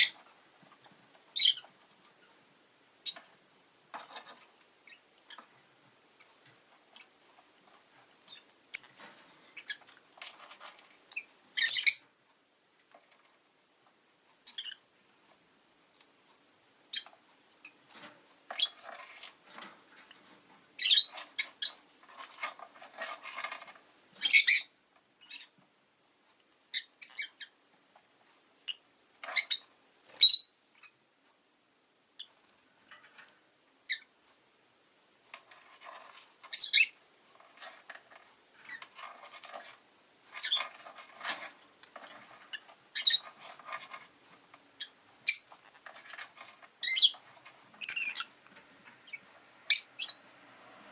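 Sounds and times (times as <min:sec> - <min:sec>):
lovebirds chattering: 0:01.3 - 0:01.8, 0:11.2 - 0:12.2, 0:24.2 - 0:25.6, 0:28.7 - 0:31.0, 0:36.0 - 0:37.0, 0:42.2 - 0:44.0, 0:44.7 - 0:45.9, 0:46.8 - 0:48.4, 0:49.0 - 0:50.2
lovebirds chirping: 0:01.3 - 0:01.8, 0:09.4 - 0:10.0, 0:11.1 - 0:12.2, 0:20.8 - 0:21.9, 0:24.2 - 0:25.6, 0:26.7 - 0:27.6, 0:28.7 - 0:31.0, 0:36.4 - 0:37.0, 0:40.3 - 0:40.8, 0:42.2 - 0:43.6, 0:44.7 - 0:45.8, 0:46.7 - 0:48.4, 0:49.0 - 0:50.2.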